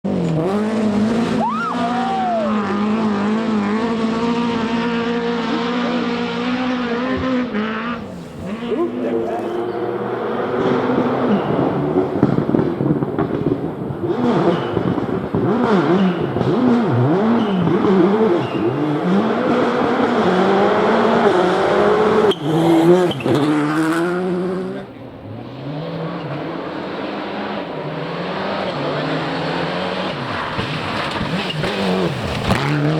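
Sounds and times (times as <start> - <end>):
rally car engine revving high: 0.0 - 32.9
tyres sliding whine: 0.1 - 12.2.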